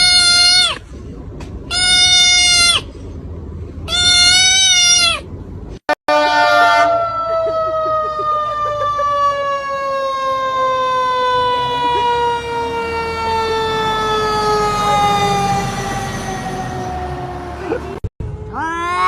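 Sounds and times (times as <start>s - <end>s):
siren falling in pitch: 6.1s - 18.0s.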